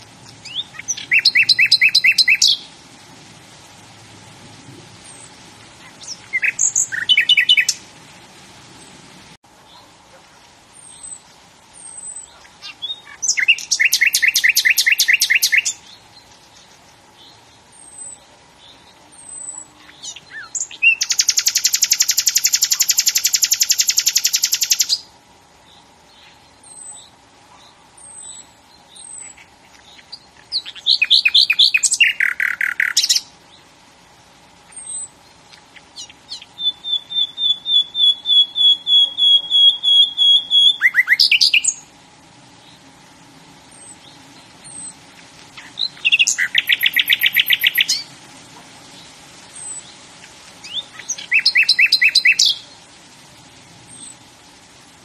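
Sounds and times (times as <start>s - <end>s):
faint steady hum: 0.0s - 55.0s
bird trilling: 0.4s - 2.6s, 5.9s - 7.8s, 30.6s - 33.2s, 36.0s - 41.8s, 45.6s - 48.0s, 50.6s - 52.6s
repeated whistled bird notes: 36.4s - 41.8s, 45.7s - 48.0s.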